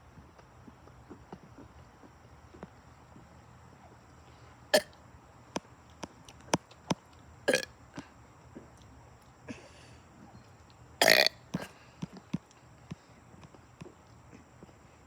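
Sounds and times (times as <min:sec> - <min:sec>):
person burping: 0:07.5 - 0:07.7, 0:11.0 - 0:11.7.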